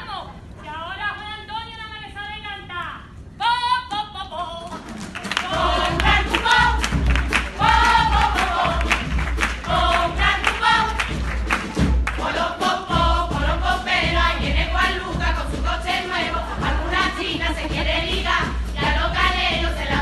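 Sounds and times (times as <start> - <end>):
drum beats: 4.7 - 20.0
group singing together: 4.7 - 20.0.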